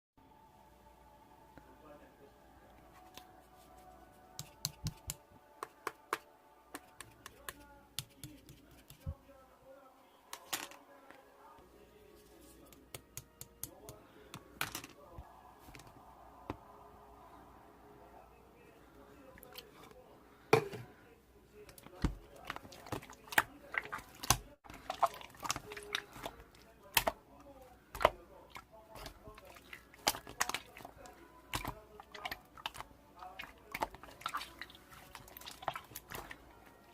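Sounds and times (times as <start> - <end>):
sharp clicks and taps: 4.4 - 9.1.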